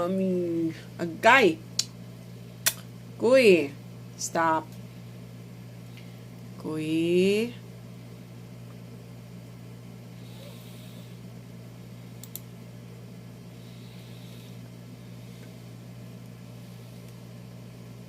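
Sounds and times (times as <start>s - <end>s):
low appliance hum: 0.0s - 18.0s
faint click: 12.2s - 12.5s.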